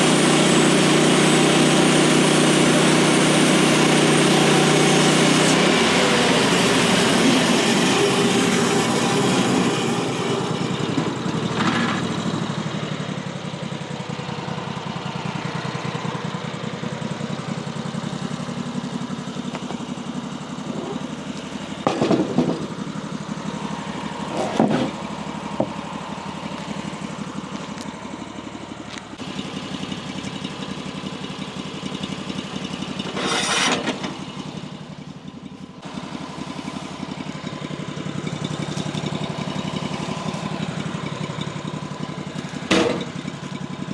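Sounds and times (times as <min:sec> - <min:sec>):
bandsaw sawmill cutting log: 0:00.0 - 0:12.9, 0:19.4 - 0:27.8, 0:29.2 - 0:34.8, 0:35.8 - 0:43.6.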